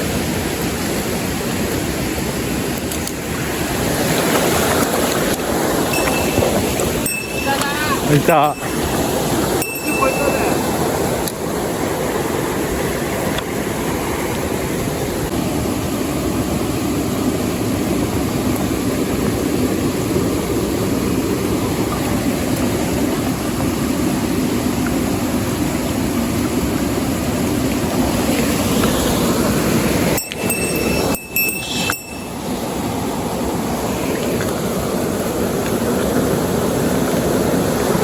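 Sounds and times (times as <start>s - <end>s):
stream water rushing: 0.0s - 38.0s
short high tone: 6.0s - 8.8s, 9.6s - 10.8s, 30.2s - 32.6s.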